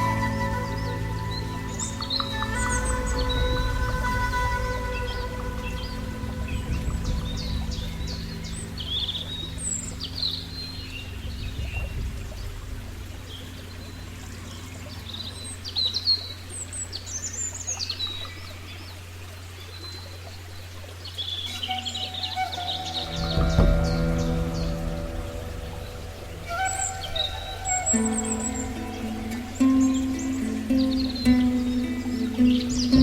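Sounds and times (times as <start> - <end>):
ambient music drone: 0.0 - 17.0, 21.5 - 33.0
small birds chirping: 0.0 - 20.4, 21.0 - 33.0.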